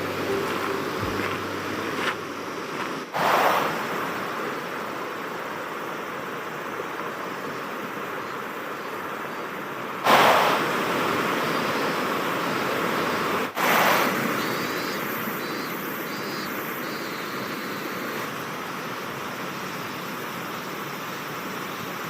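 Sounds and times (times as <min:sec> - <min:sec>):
waterfall rushing: 0:00.0 - 0:08.1.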